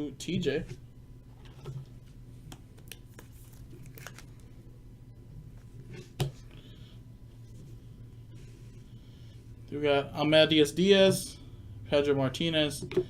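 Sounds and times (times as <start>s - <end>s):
steady low hum: 0.0s - 13.0s
cards rustling and clicking: 2.5s - 4.5s.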